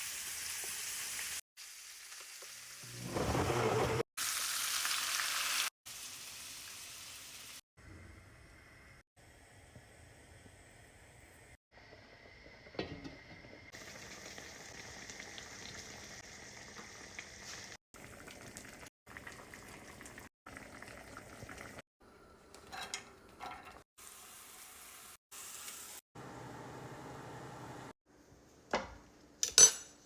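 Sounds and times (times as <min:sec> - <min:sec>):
food sizzling in a pan: 0:00.0 - 0:07.6, 0:12.0 - 0:17.8, 0:24.0 - 0:26.0.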